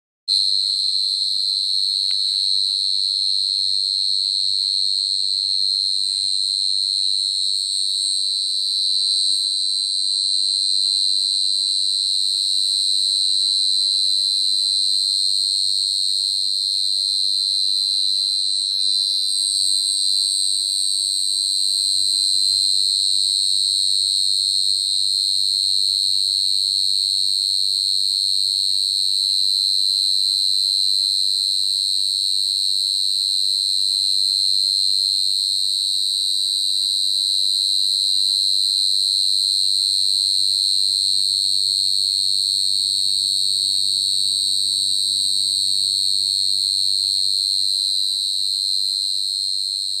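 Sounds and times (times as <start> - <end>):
cricket chirping: 0.3 - 29.8.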